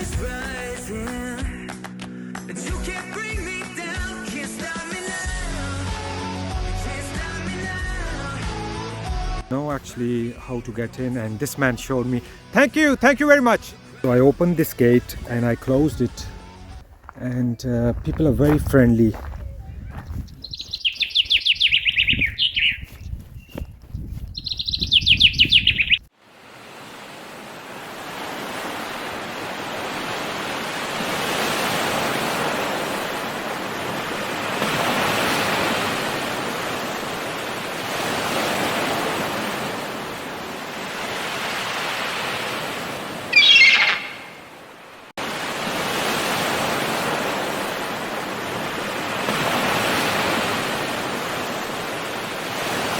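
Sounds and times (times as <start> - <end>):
songbird trilling and chirping: 19.6 - 26.1, 43.3 - 44.5
rushing water: 26.1 - 52.9.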